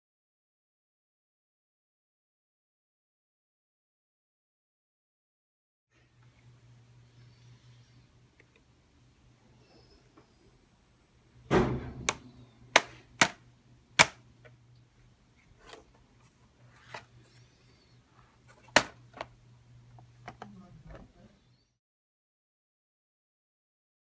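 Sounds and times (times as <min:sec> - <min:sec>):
faint steady hum: 0:05.9 - 0:21.8
dull thud on laptop: 0:11.5 - 0:12.2
laptop plastic clicks: 0:14.0 - 0:14.2.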